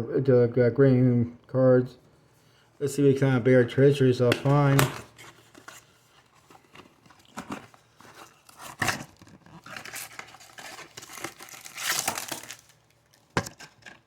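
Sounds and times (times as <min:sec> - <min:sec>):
packaging tearing and crinkling: 0:04.5 - 0:14.0.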